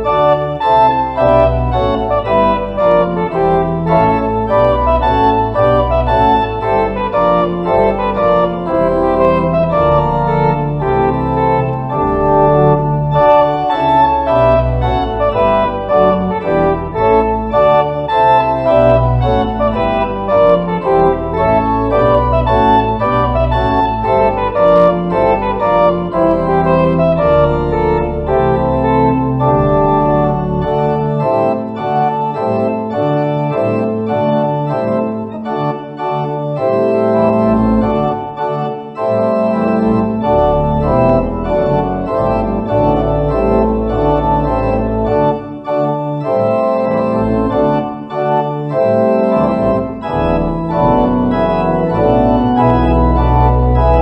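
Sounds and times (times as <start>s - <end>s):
deep bass line: 0.0s - 31.4s, 39.8s - 45.4s, 49.3s - 54.0s
organ playing sustained chords: 0.0s - 54.0s.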